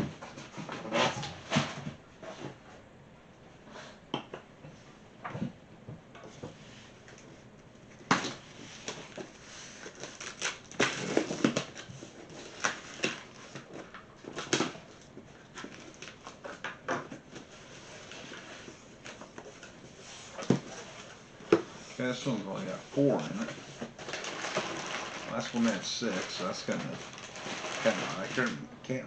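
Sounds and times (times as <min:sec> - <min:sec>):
cardboard rustling: 0:08.0 - 0:28.6.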